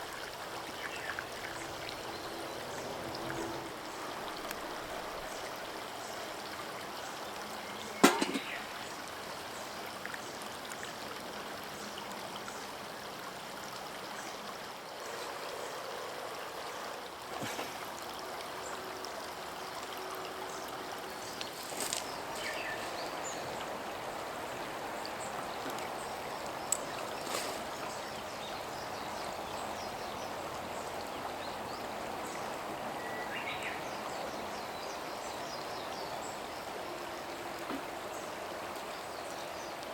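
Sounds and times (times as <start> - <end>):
water rushing: 0.0 - 33.8
sharp knock: 8.0 - 8.6.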